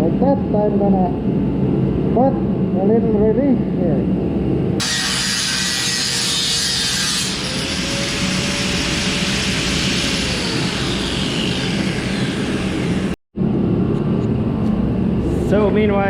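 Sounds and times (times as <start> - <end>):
angle grinder cutting sheet metal: 4.8 - 13.2.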